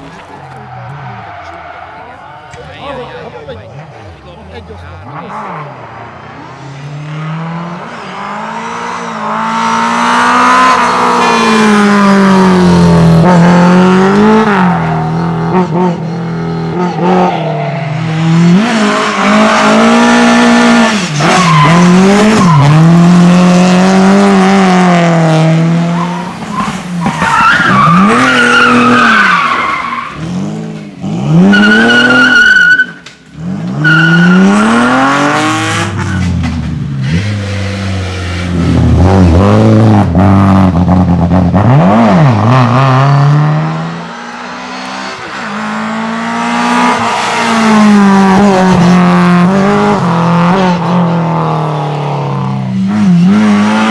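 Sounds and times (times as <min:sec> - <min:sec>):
car engine revving hard: 0:02.9 - 0:32.8, 0:33.4 - 0:53.9
tyre squeal: 0:20.9 - 0:23.0, 0:25.8 - 0:30.4, 0:31.4 - 0:33.1, 0:33.7 - 0:35.1.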